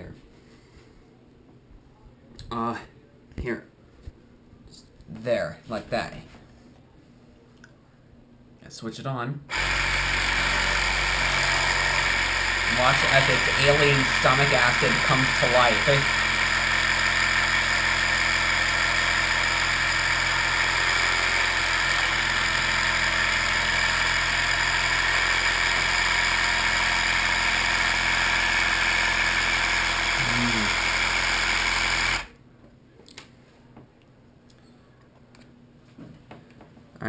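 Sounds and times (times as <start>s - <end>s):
toy motor whirring: 9.5s - 32.3s.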